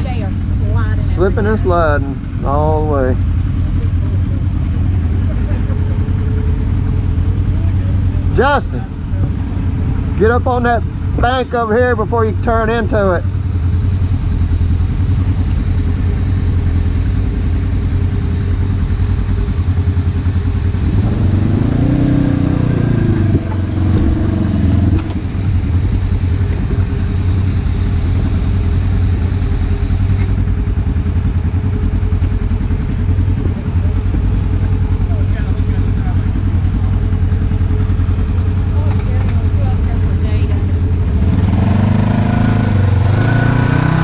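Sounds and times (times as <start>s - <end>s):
engine revving: 0.0s - 44.0s
utility vehicle engine idling: 0.0s - 44.0s.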